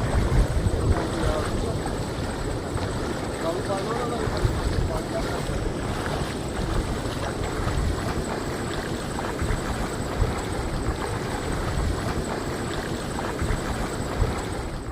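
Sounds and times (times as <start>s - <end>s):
low rumbles: 0.0s - 8.3s
wind buffeting microphone: 0.0s - 14.9s.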